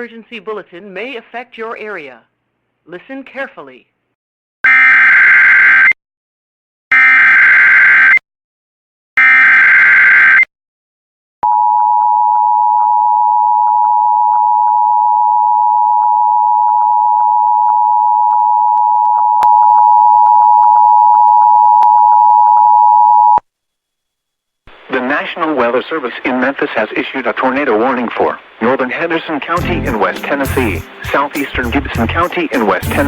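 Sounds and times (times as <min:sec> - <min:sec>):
two-tone alarm: 0:04.7 - 0:06.0, 0:06.9 - 0:08.2, 0:09.2 - 0:10.5, 0:11.4 - 0:23.4.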